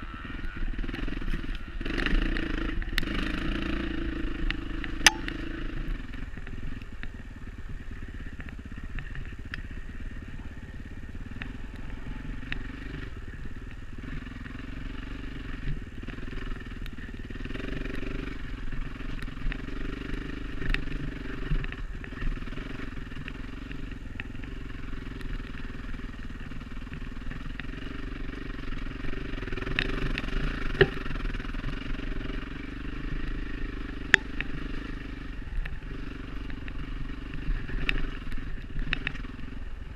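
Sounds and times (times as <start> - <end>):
dirt bike engine running: 0.0 - 39.9
sharp clicks and knocks: 4.4 - 5.4, 29.7 - 31.1.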